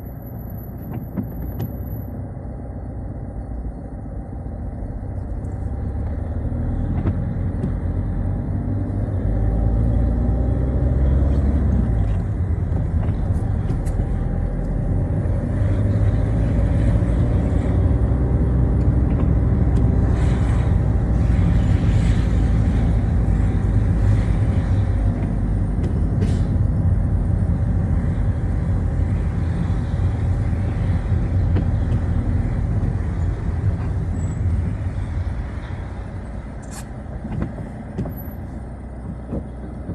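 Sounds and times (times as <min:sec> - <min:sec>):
tyres rumbling on wet road: 0:00.0 - 0:39.9
car engine running: 0:00.7 - 0:39.9.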